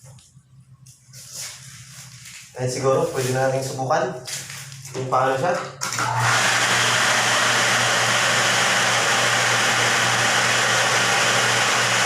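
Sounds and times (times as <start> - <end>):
electric water pump running: 5.8 - 12.0.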